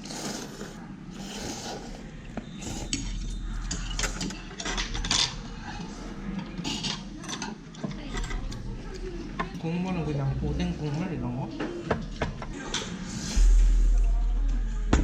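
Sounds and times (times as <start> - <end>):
utensils scraping against bowls: 0.0 - 8.7
restaurant background hum: 0.0 - 15.0.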